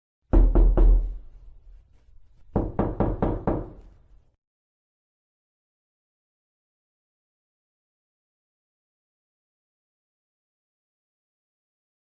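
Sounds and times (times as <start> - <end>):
knocking on a door: 0.3 - 1.2, 2.5 - 3.8.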